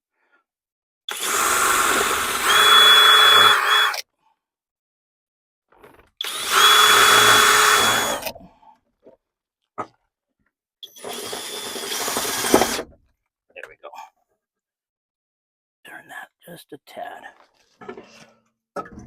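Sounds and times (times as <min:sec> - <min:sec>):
cordless drill whining: 0:01.1 - 0:04.0, 0:06.2 - 0:08.3, 0:10.8 - 0:12.9.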